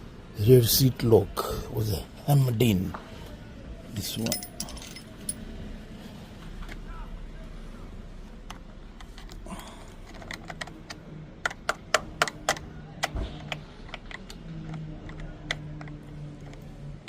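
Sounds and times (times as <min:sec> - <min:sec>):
hand tools clicking and tapping: 0:09.0 - 0:16.6.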